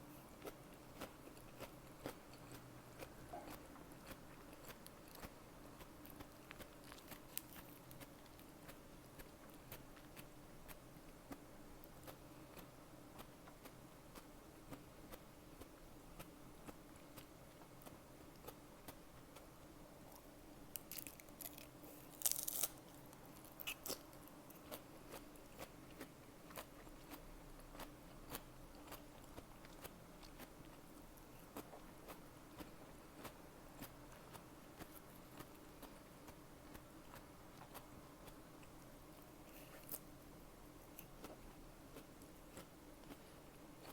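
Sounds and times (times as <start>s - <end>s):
person chewing food: 0.4s - 43.9s
crunchy bites: 20.1s - 25.7s.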